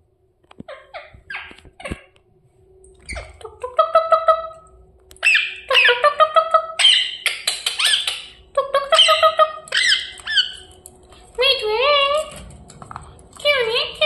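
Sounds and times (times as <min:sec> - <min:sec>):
parakeet squawking: 0:05.2 - 0:10.7.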